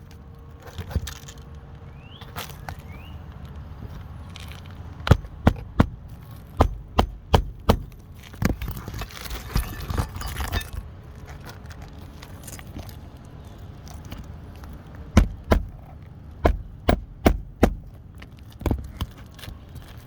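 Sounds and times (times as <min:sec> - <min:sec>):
loud sharp impacts: 0:05.1 - 0:08.0, 0:15.2 - 0:18.0.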